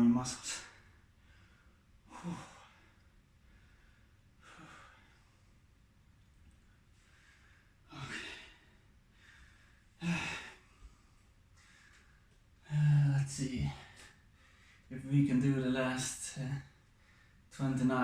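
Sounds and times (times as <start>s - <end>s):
man breathing hard and sighing: 1.2s - 5.2s, 7.0s - 12.9s.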